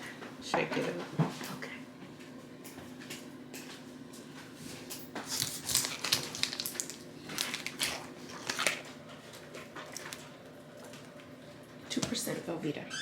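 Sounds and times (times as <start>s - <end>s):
paper wrapper crinkling and tearing: 5.2s - 9.0s.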